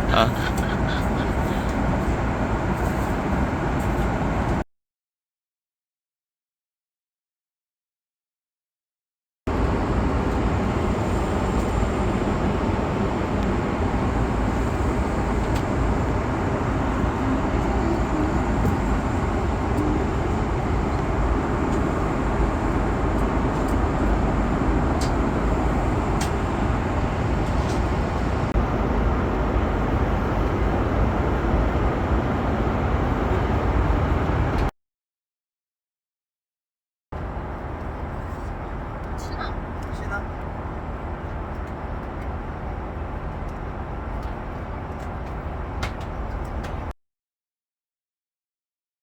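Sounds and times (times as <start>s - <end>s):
vehicle cabin rumble: 0.0s - 4.6s, 9.5s - 34.7s.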